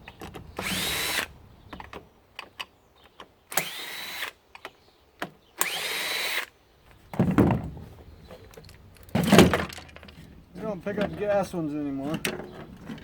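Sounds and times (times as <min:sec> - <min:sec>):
power drill motor whining: 0:00.6 - 0:01.3, 0:03.5 - 0:04.4, 0:05.6 - 0:06.5.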